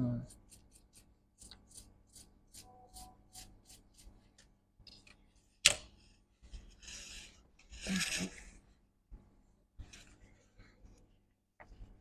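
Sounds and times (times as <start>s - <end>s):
brush scrubbing circuit board: 0.3s - 4.2s.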